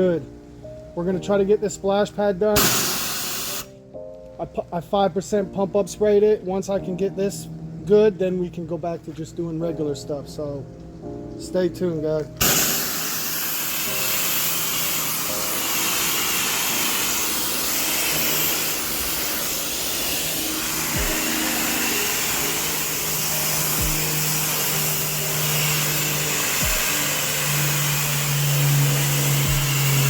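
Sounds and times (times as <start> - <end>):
background music deep bass: 0.0 - 30.0
pressure washer spraying: 2.6 - 3.8, 12.4 - 30.0.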